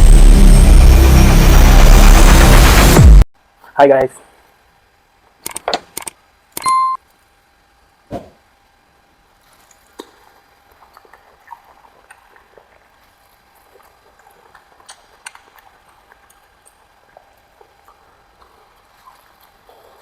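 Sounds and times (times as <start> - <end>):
mouth clicks and chewing: 13.7 - 20.0.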